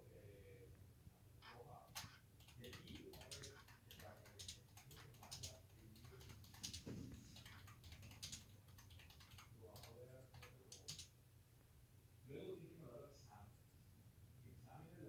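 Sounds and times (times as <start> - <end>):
faint irregular clicks: 1.4 - 11.1.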